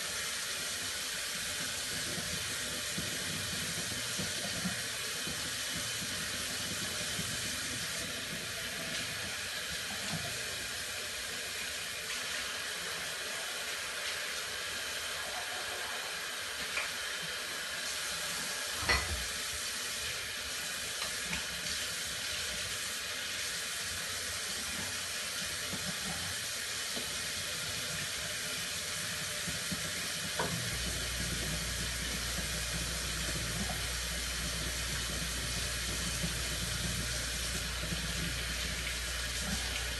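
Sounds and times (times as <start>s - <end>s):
tap water running into sink: 0.0s - 39.9s
dishes clinking: 18.8s - 19.3s.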